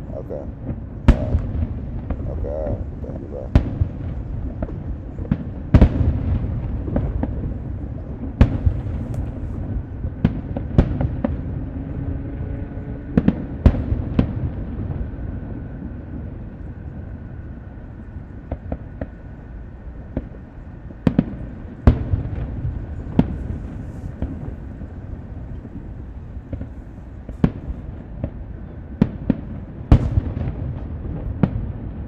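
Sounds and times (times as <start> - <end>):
fireworks crackles: 0.0 - 11.2, 21.0 - 28.4
fireworks bangs: 0.0 - 11.6, 21.0 - 32.0
low rumble: 0.0 - 28.8.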